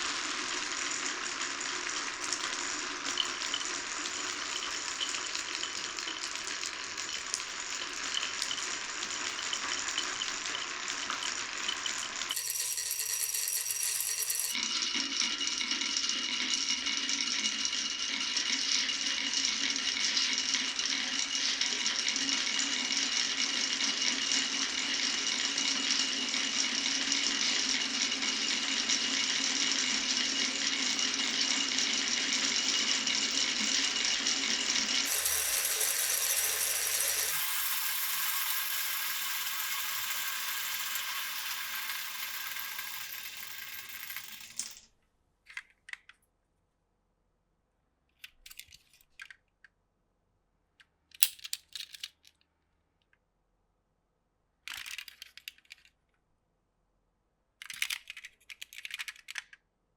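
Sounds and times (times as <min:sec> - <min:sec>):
marbles rattling on wooden run: 0:02.2 - 0:14.6, 0:30.7 - 0:44.8.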